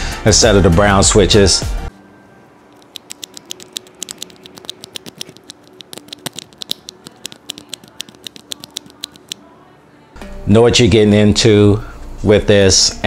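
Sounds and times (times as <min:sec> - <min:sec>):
mechanical keyboard typing: 0:02.8 - 0:09.4.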